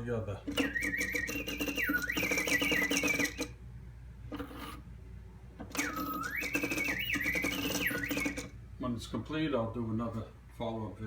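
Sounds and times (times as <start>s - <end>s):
mechanical clatter from clockwork: 0.5s - 3.5s, 5.7s - 8.5s
bellows whistle warbling: 0.5s - 3.6s, 5.8s - 8.6s.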